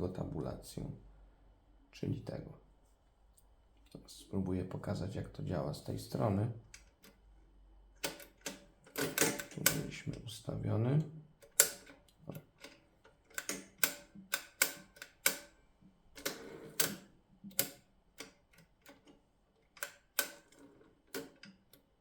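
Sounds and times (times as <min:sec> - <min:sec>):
typewriter carriage rasping slide: 0:16.2 - 0:17.0.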